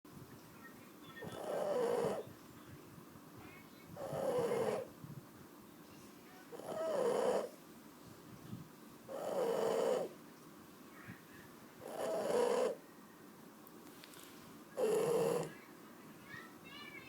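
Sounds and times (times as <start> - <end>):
dog snoring: 1.2 - 2.3, 4.0 - 4.9, 6.5 - 7.6, 9.1 - 10.2, 11.8 - 12.8, 14.8 - 15.5.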